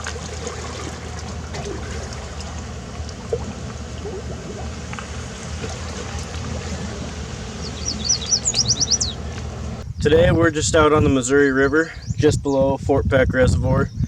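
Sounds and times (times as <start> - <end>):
boat motor running: 0.0 - 12.0
water rushing along hull: 0.0 - 12.0
high chirps: 6.9 - 10.1.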